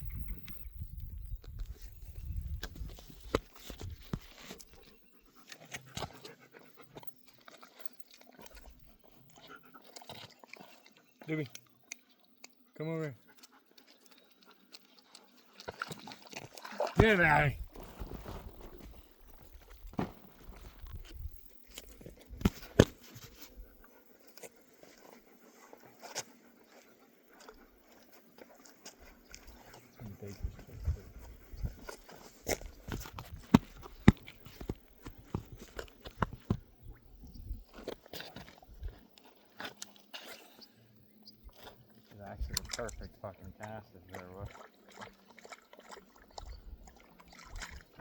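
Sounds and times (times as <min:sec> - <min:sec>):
dog panting: 0:04.6 - 0:07.7, 0:09.1 - 0:10.3, 0:13.2 - 0:15.3, 0:22.6 - 0:32.3.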